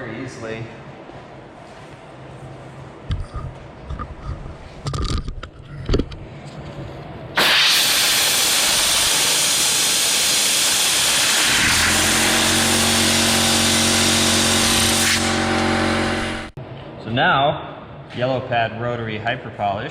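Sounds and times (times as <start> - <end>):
compressed air blow gun hissing: 7.4 - 15.4
motor hum: 11.0 - 16.6.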